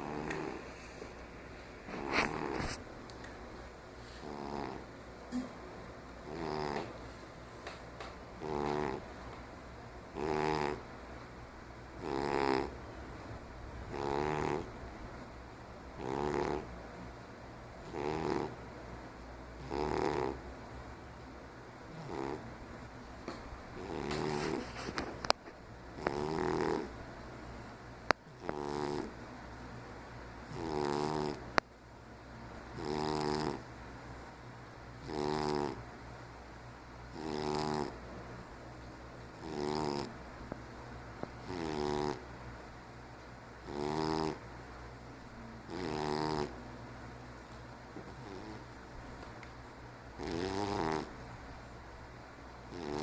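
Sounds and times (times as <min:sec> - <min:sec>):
cat snoring: 0:00.0 - 0:00.8, 0:01.9 - 0:02.8, 0:04.2 - 0:04.8, 0:06.2 - 0:06.9, 0:08.4 - 0:09.0, 0:10.2 - 0:10.8, 0:12.0 - 0:12.8, 0:13.9 - 0:14.7, 0:16.0 - 0:16.7, 0:17.8 - 0:18.6, 0:19.6 - 0:20.4, 0:21.9 - 0:22.5, 0:23.8 - 0:25.0, 0:26.0 - 0:26.9, 0:28.3 - 0:29.1, 0:30.5 - 0:31.4, 0:32.8 - 0:33.6, 0:35.0 - 0:35.8, 0:37.1 - 0:38.0, 0:39.4 - 0:40.1, 0:41.4 - 0:42.2, 0:43.6 - 0:44.4, 0:45.6 - 0:46.6, 0:48.1 - 0:48.6, 0:50.2 - 0:51.1, 0:52.7 - 0:53.0.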